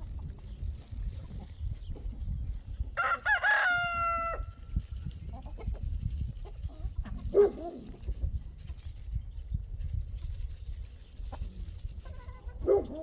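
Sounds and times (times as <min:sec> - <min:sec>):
rooster crowing: 0:03.0 - 0:04.6.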